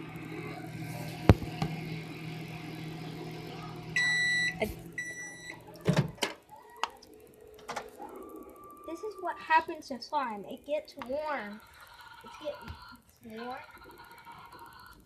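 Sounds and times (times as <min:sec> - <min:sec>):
microwave oven humming: 0:00.0 - 0:15.0
long beeps: 0:04.0 - 0:05.6.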